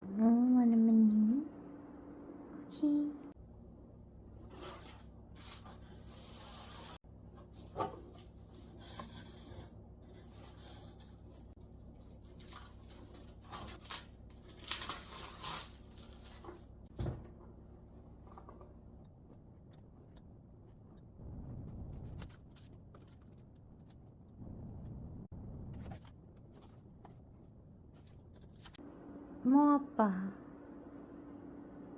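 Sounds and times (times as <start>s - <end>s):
low steady hum: 0.0s - 6.2s, 15.9s - 31.9s
packaging rustling and scraping: 4.5s - 16.7s.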